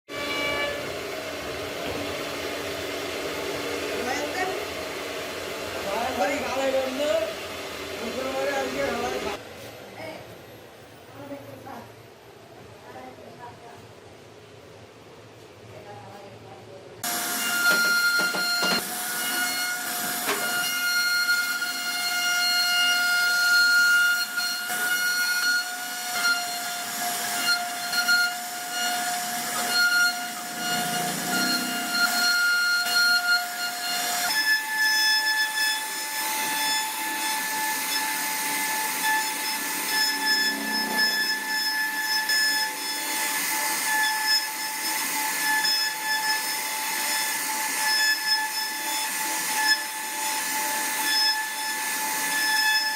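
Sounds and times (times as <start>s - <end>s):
router spindle whine: 17.0s - 52.9s.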